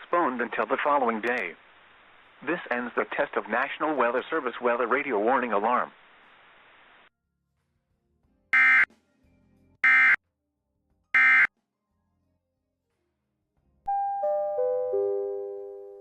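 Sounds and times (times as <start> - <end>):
short electronic data bursts: 8.6 - 8.9, 9.8 - 10.2, 11.2 - 11.5.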